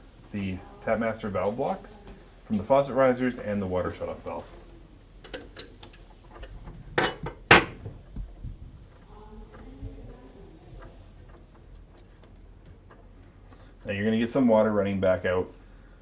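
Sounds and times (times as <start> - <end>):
wrench clinking on pipe fittings: 5.2 - 7.9.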